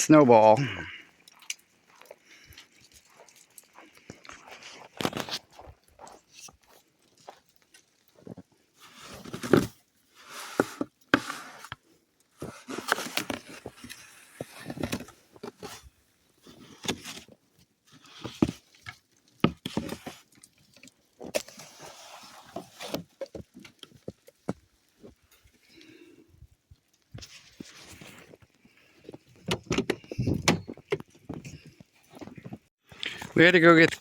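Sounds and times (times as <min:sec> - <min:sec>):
snow crunching and scraping: 0:01.8 - 0:17.3, 0:21.1 - 0:26.2, 0:27.0 - 0:29.4, 0:31.2 - 0:34.0.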